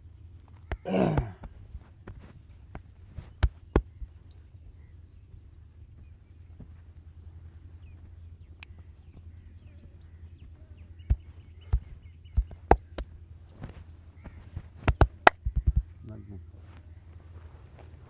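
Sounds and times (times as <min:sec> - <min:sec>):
hand strikes on body: 0:00.7 - 0:01.4, 0:03.4 - 0:04.0, 0:11.1 - 0:13.1, 0:14.8 - 0:15.8.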